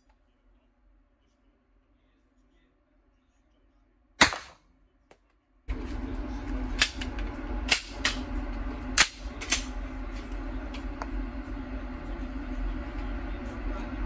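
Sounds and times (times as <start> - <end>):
steady low hum: 0.0 - 14.0
gunshots: 4.2 - 4.6.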